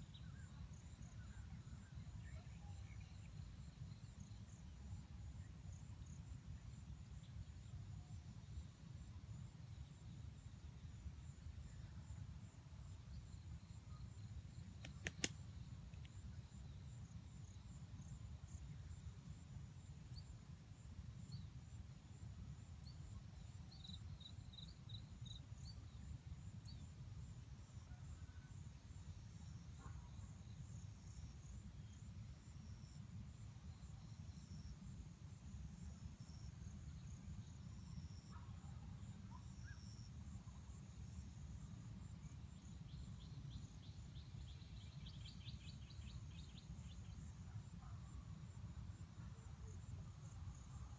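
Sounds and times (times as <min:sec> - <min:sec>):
insects droning: 0:00.0 - 0:50.9
sharp double click: 0:14.8 - 0:15.4.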